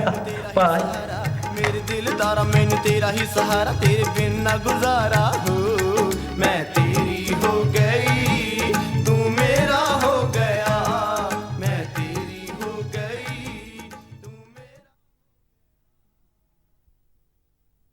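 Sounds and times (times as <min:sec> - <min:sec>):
repeating bass beat: 0:00.0 - 0:12.4
pop song with singer: 0:00.0 - 0:14.9.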